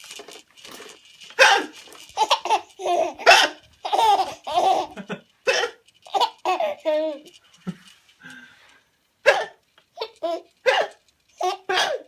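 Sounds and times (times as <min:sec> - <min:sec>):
pretend hiccups: 0:01.4 - 0:01.8, 0:09.2 - 0:09.6
child laughing: 0:01.4 - 0:05.2, 0:06.1 - 0:07.8.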